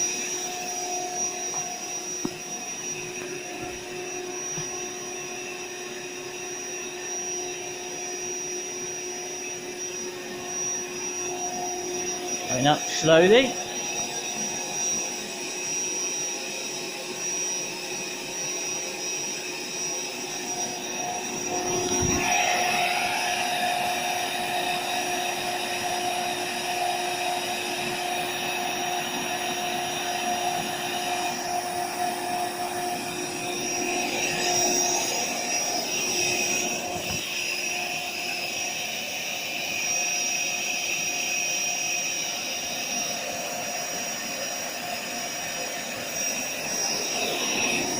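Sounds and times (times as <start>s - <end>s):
electric air pump running: 0.0s - 47.9s.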